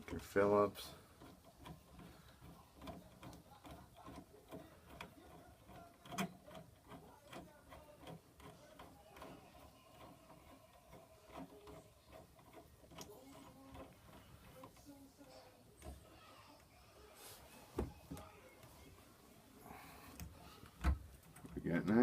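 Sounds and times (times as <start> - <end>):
screwdriver clicking and scraping: 0.0 - 16.2.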